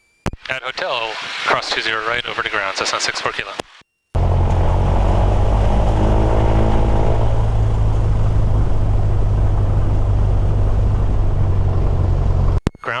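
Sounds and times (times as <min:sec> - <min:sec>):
airplane piston engine droning: 0:04.2 - 0:12.6.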